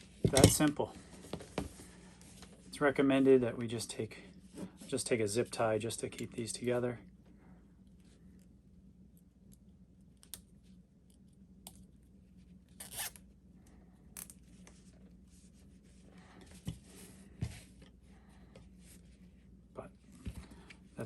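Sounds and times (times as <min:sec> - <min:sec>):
zip tie clicking: 0:12.8 - 0:13.2
zip tie rasp: 0:12.8 - 0:13.2.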